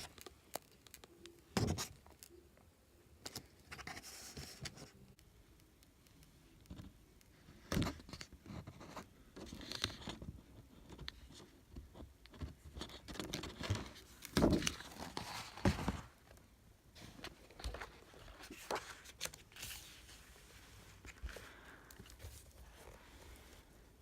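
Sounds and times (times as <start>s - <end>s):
paper and packaging rustling: 12.6s - 16.3s, 17.0s - 23.5s.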